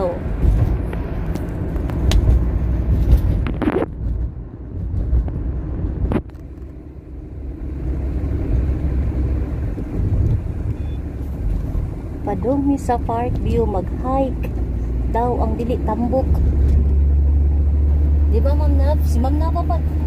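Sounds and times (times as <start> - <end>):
road vehicle rumbling: 0.0 - 20.0
vehicle knocks and jolts: 0.3 - 1.2, 1.8 - 6.6.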